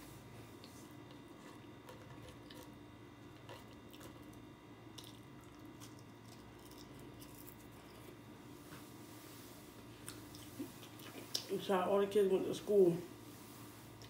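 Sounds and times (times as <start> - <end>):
low room hum: 0.0 - 14.0
faint chewing: 0.5 - 8.9, 10.0 - 11.6.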